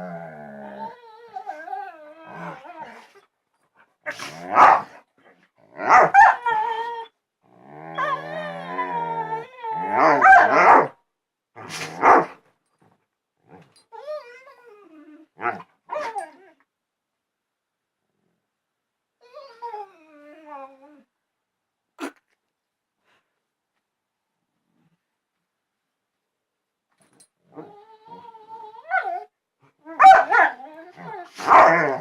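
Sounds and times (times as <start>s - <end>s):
dogs howling and whining: 0.0s - 3.2s, 5.8s - 10.9s, 13.8s - 16.6s, 19.2s - 21.0s, 27.5s - 32.0s.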